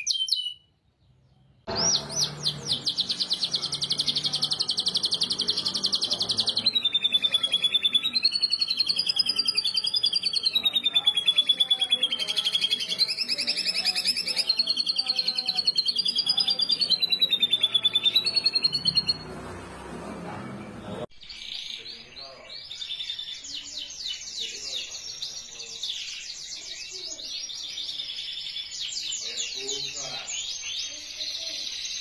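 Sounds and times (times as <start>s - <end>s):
canary singing fast trill: 0.0s - 19.5s.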